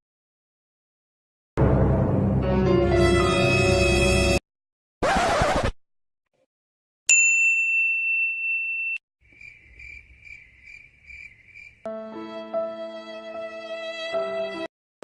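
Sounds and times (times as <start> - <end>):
music: 1.6 - 4.4, 11.9 - 14.7
bright ding: 7.1 - 9.0
cricket chirping: 9.2 - 11.9.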